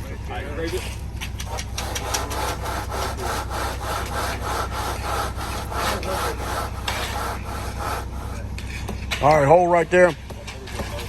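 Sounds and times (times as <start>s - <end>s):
steady low hum: 0.0s - 11.0s
board scraping wet concrete: 0.7s - 11.0s.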